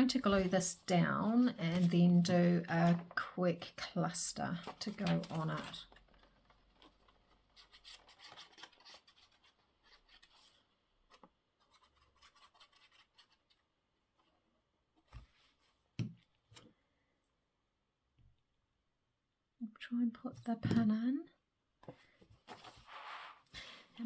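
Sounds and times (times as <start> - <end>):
paper rubbing and rustling: 0.1 - 3.3, 4.5 - 13.6, 22.4 - 23.5.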